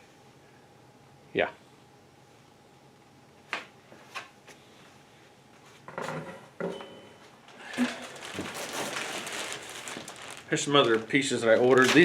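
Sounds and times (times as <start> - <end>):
plastic packaging crinkling: 7.4 - 12.0.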